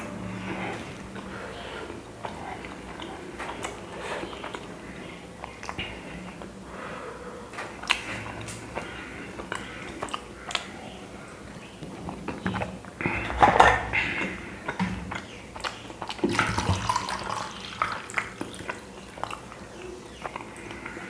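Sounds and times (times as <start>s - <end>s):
person chewing food: 0.0s - 6.8s, 7.5s - 21.0s
dishes clinking: 13.1s - 14.2s.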